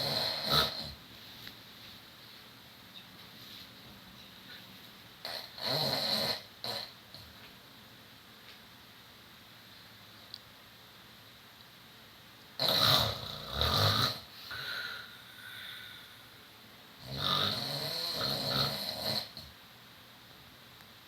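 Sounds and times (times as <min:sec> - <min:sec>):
person snoring: 0:00.0 - 0:01.0, 0:05.2 - 0:06.9, 0:12.6 - 0:16.2, 0:17.0 - 0:19.4.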